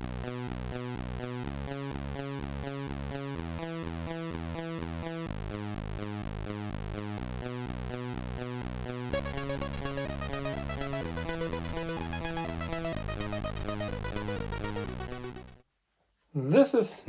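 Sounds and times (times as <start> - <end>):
electronic synthesizer music: 7.5 - 15.6.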